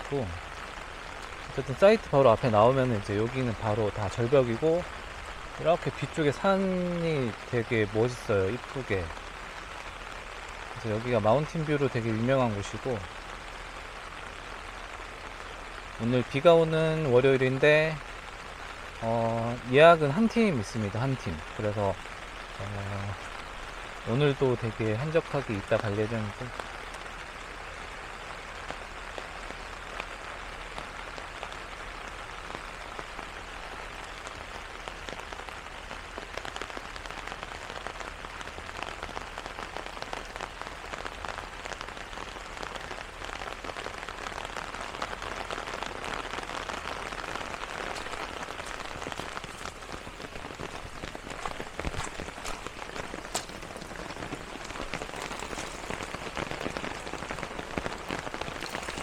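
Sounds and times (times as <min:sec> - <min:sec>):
steady rain hiss: 0:00.0 - 0:59.0
single raindrops ticking: 0:00.4 - 0:02.5, 0:44.5 - 0:59.0.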